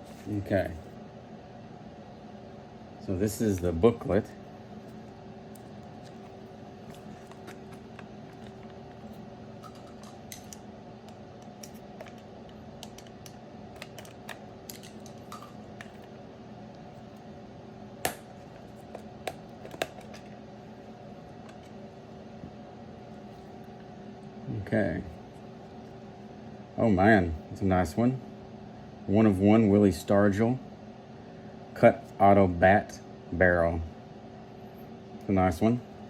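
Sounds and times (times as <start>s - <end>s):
steady electrical hum: 0.0s - 36.0s
card booklet clicks and rustles: 5.6s - 10.6s, 18.5s - 20.3s.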